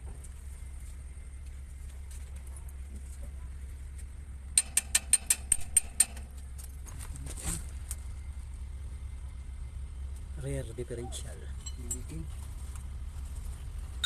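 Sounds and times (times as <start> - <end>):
steady low hum: 0.0 - 14.0
hand tool clicks and taps: 4.6 - 6.3
scraping rustle: 6.4 - 8.0.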